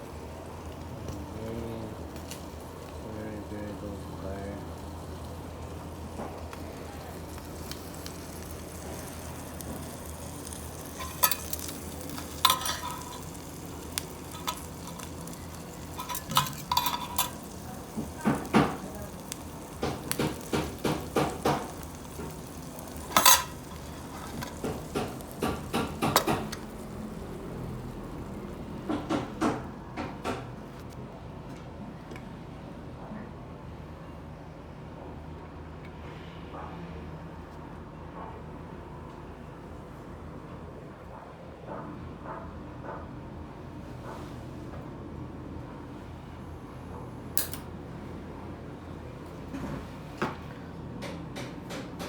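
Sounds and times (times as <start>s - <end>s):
metal utensils clinking on cookware: 10.2s - 19.3s, 19.9s - 26.6s.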